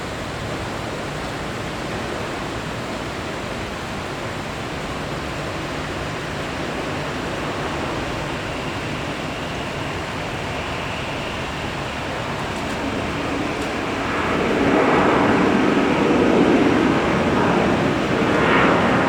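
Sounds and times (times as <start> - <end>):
jet engines roaring: 0.0 - 19.0.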